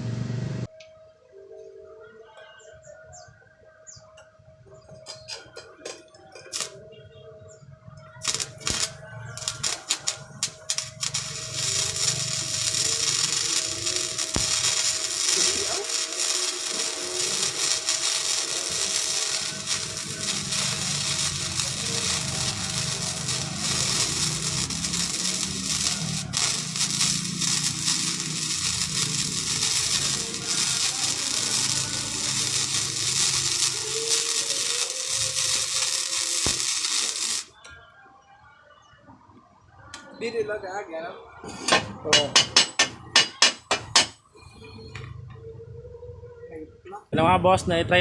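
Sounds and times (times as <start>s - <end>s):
low hum: 0.0s - 0.7s
welding arc crackling: 5.1s - 6.8s, 8.2s - 37.6s.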